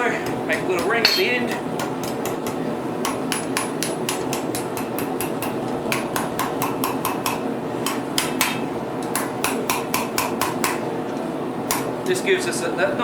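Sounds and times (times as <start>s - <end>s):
hammer striking steel on anvil: 0.8s - 1.6s.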